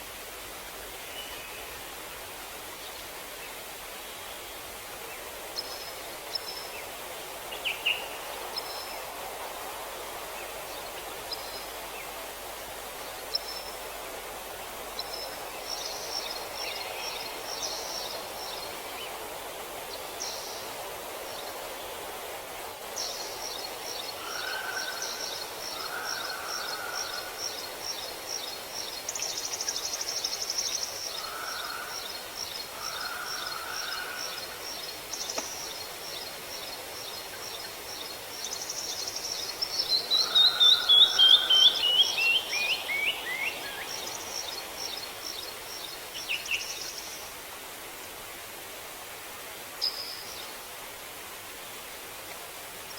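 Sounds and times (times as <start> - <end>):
steady soft hiss: 0.0 - 52.9
birds singing: 23.0 - 46.8.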